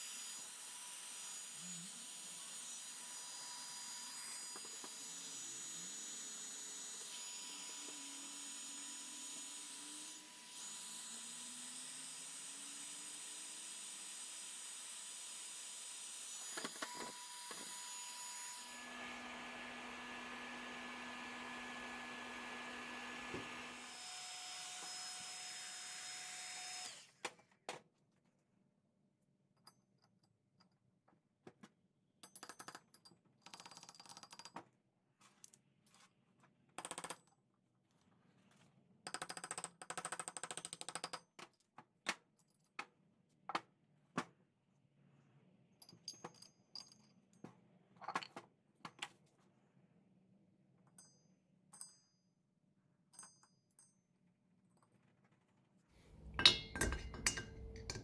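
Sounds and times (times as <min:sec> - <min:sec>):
metal tools clinking on workbench: 0:56.1 - 0:58.0.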